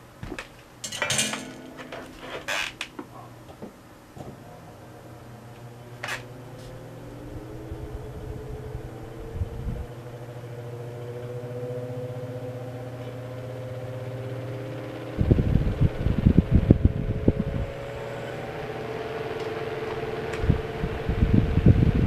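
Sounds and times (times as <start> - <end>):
fan motor humming: 0.0 - 22.0
wind buffeting microphone: 6.3 - 10.8, 15.2 - 18.0, 20.0 - 22.0.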